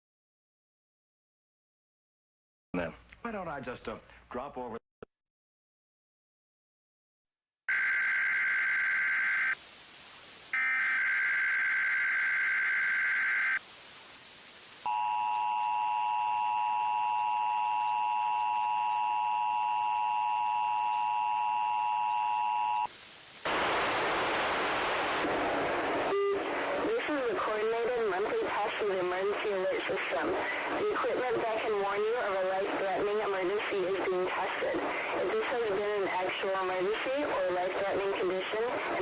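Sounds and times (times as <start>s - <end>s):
static hiss: 8.0s - 39.0s
two-tone attention signal: 14.9s - 22.9s, 26.1s - 26.4s.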